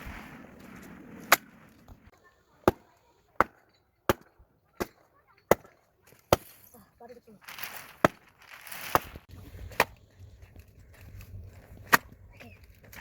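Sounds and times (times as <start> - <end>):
axe chopping firewood: 2.6 - 6.7, 8.0 - 10.0, 11.8 - 12.2.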